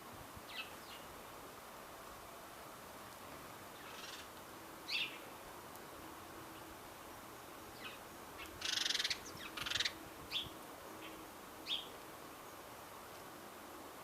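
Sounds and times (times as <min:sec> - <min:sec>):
songbird chirps: 0:00.4 - 0:01.4, 0:02.0 - 0:13.6
harsh raspy bird calls: 0:08.6 - 0:10.0.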